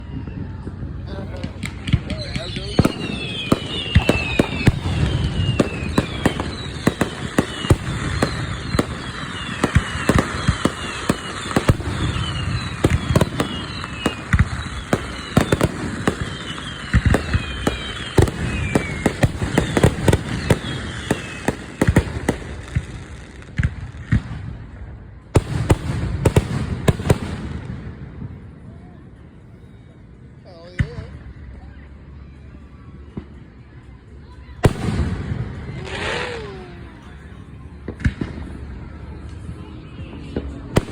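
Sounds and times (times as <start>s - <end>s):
fireworks cracks and bangs: 0.1s - 28.5s, 34.6s - 37.0s, 37.8s - 40.9s
fireworks whistles falling in pitch: 1.9s - 22.8s.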